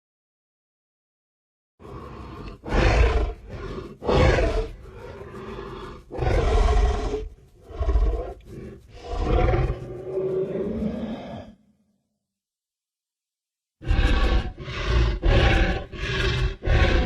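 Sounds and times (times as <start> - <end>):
animal roars: 1.8 - 11.9, 13.8 - 17.0
deep animal growl: 1.8 - 11.9, 13.8 - 17.0.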